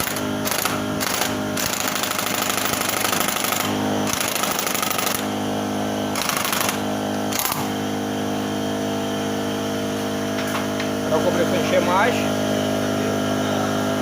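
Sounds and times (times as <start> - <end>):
pneumatic impact wrench hammering: 0.0 - 5.4, 6.1 - 8.0
air compressor humming: 0.0 - 14.0.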